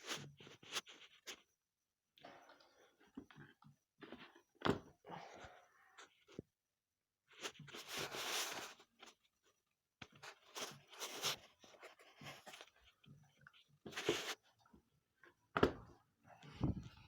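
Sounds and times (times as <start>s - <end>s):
rustling and scraping: 0.0s - 1.4s, 7.3s - 9.3s, 10.1s - 14.5s.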